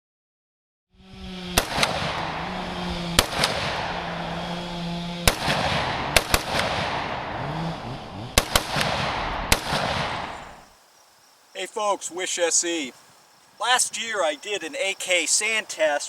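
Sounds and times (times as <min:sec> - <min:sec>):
steady low hum: 0:01.0 - 0:10.8
gunshots: 0:01.6 - 0:04.6, 0:05.2 - 0:07.4, 0:08.3 - 0:10.6.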